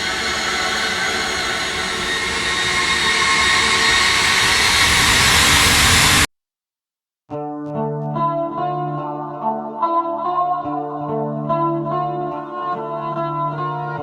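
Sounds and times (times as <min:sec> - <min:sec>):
faint sustained tones: 0:00.0 - 0:06.2
rushing roar riser: 0:00.0 - 0:06.3.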